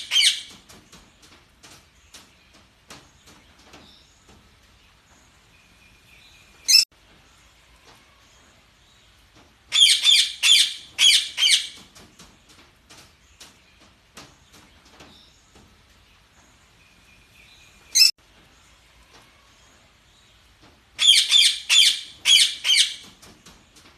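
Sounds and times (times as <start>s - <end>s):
parakeets chirping and squawking: 0.0s - 0.5s.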